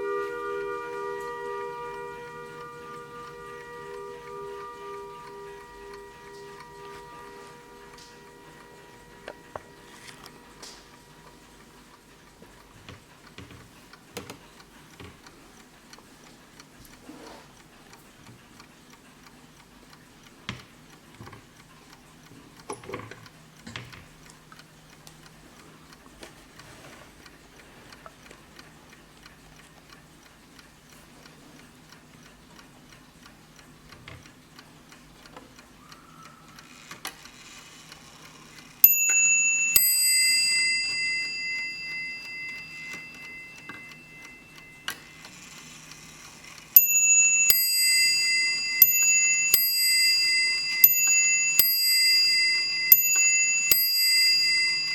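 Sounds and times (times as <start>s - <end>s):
mantel clock ticking: 0.0s - 54.9s
clock hammer striking bell: 38.8s - 45.2s, 46.8s - 54.9s.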